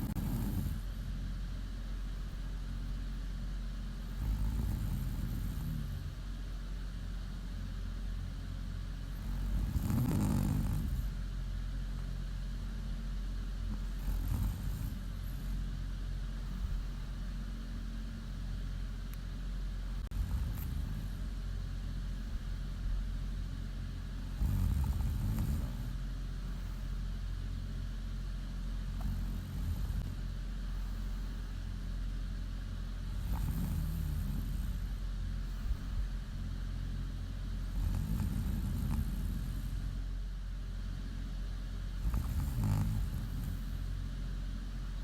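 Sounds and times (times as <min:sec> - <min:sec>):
woman snoring: 0:00.0 - 0:01.1, 0:04.1 - 0:06.2, 0:09.1 - 0:11.2, 0:13.7 - 0:15.6, 0:20.0 - 0:21.3, 0:24.2 - 0:26.0, 0:28.9 - 0:30.2, 0:33.1 - 0:35.0, 0:37.6 - 0:40.0, 0:42.0 - 0:43.9
steady low hum: 0:00.0 - 0:45.0.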